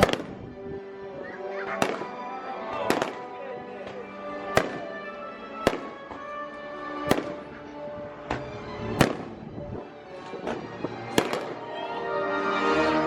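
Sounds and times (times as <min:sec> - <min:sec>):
fireworks bangs and pops: 0:00.0 - 0:00.4, 0:01.8 - 0:02.1, 0:02.8 - 0:03.2, 0:04.5 - 0:05.0, 0:05.6 - 0:06.3, 0:07.0 - 0:07.6, 0:08.3 - 0:11.7
music playing: 0:00.0 - 0:13.0.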